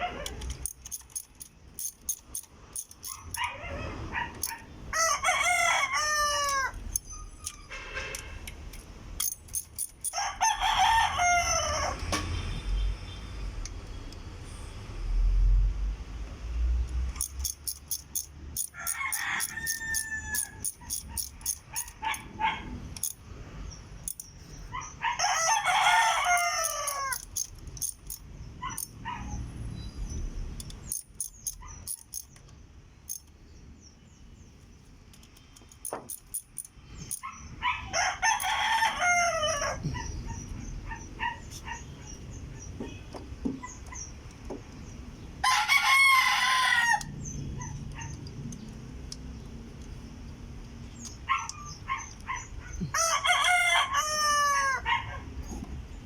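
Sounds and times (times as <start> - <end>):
rooster crowing: 4.4 - 7.3, 10.0 - 12.1, 18.6 - 21.9, 25.0 - 27.4, 37.8 - 39.9, 45.4 - 47.2, 52.8 - 55.2.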